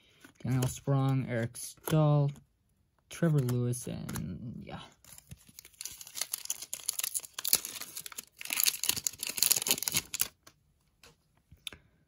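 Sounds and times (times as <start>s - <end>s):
foil wrapper tearing and crinkling: 5.0s - 10.4s.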